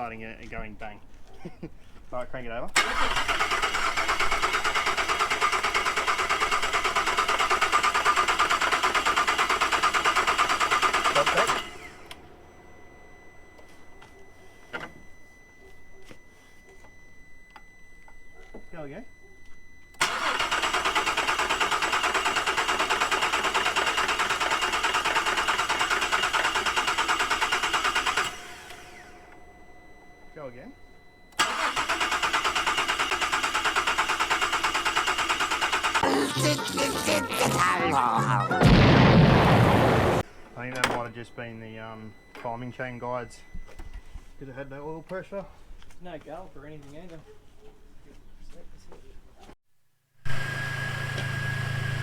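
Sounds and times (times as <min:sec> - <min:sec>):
engine cranking without firing: 0:02.7 - 0:12.2, 0:19.9 - 0:29.4, 0:31.3 - 0:36.2.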